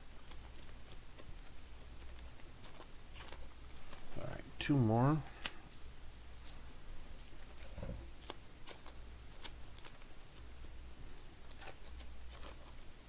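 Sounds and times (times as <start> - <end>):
low room hum: 0.0 - 13.0
trading cards clicking and rustling: 0.2 - 4.3, 7.2 - 10.1, 11.5 - 12.8.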